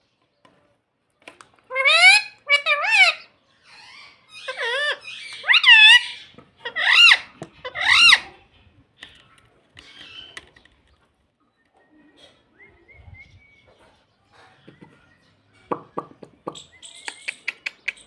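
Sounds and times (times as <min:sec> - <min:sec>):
parakeet squawking: 0:01.7 - 0:08.3.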